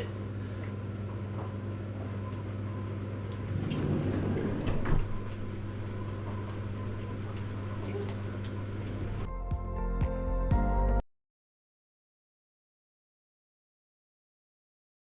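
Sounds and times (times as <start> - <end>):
low machine hum: 0.0 - 9.3.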